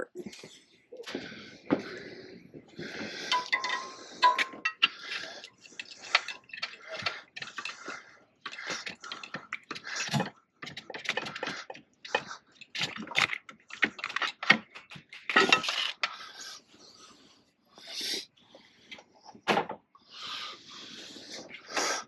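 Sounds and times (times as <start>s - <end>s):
tools clanking and scraping: 2.8s - 16.4s.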